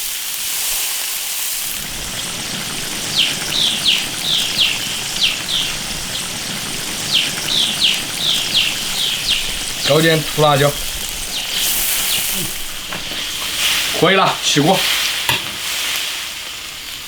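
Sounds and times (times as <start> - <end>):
wok bubbling and hissing: 0.0 - 17.0
bird calling: 1.6 - 14.9.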